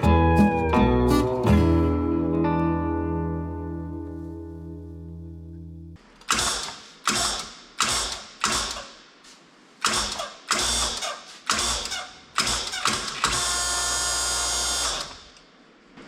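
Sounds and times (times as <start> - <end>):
sharp mechanical clacks: 6.2 - 9.0.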